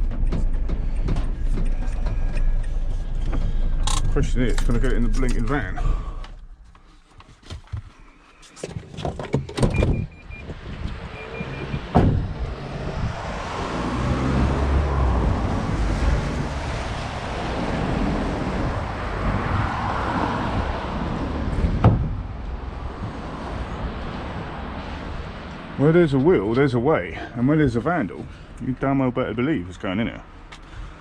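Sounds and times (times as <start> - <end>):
steady rumbling noise: 0.0 - 8.0
short beeps: 4.7 - 5.9.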